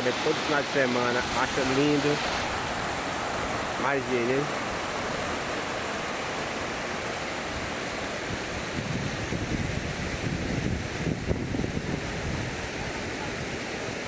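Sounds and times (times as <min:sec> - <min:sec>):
waterfall rushing: 0:00.0 - 0:14.0
wind buffeting microphone: 0:07.4 - 0:13.7.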